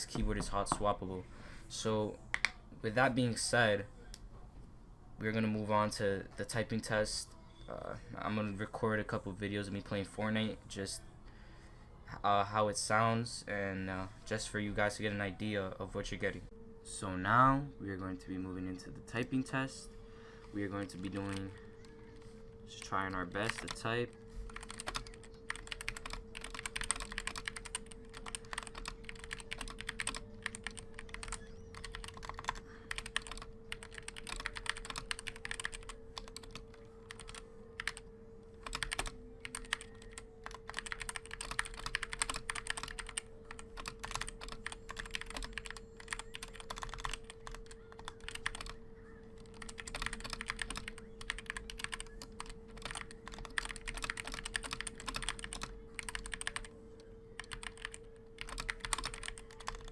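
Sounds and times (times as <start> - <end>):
faint steady hum: 0.0 - 59.9
mechanical keyboard typing: 23.1 - 23.8, 24.5 - 38.0, 38.6 - 48.8, 49.4 - 56.7, 57.3 - 59.9.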